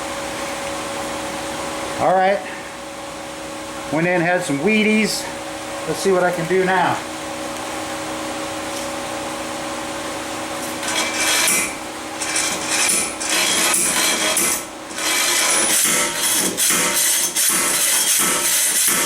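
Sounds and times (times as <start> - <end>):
steady hum: 0.0 - 19.0
metal tools scraping and banging: 10.7 - 19.0.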